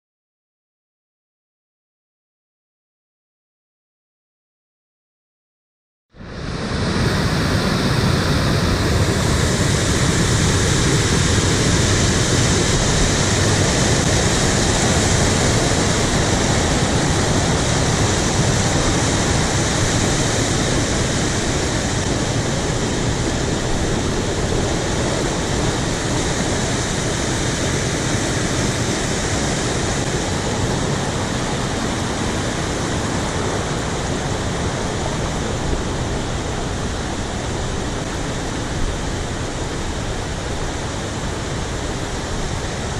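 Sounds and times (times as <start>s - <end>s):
waterfall roaring: 6.4s - 42.9s.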